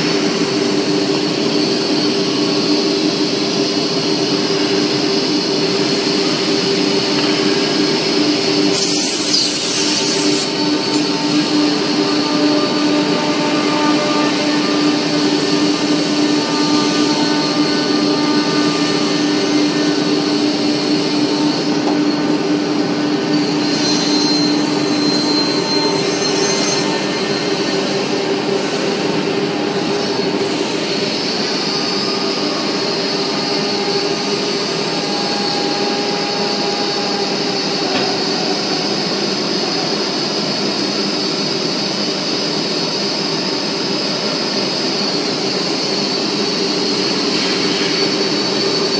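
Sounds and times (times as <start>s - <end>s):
panel saw machine drone: 0.0s - 41.8s
high whine of saw blade: 0.0s - 48.9s.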